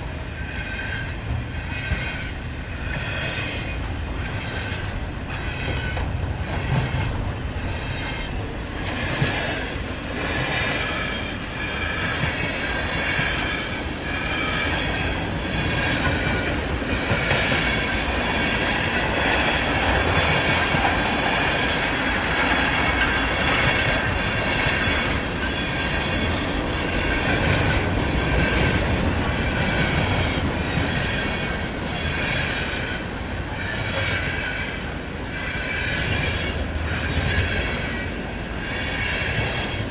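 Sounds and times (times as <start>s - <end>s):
steel wheels rolling on rail: 0.0s - 39.9s
high wheel squeal: 0.4s - 39.9s
clacks over rail joints: 0.6s - 13.6s, 14.3s - 39.9s.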